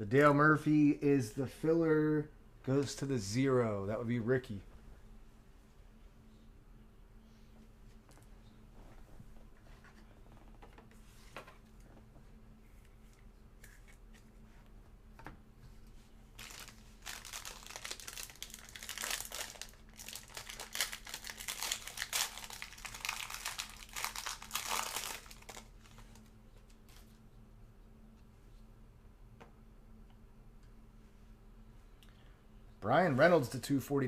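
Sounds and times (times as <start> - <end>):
card wrapper crinkling and tearing: 16.4 - 26.3.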